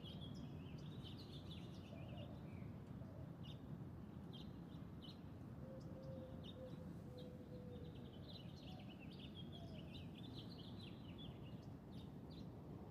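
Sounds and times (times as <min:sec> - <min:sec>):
low background noise: 0:00.0 - 0:12.9.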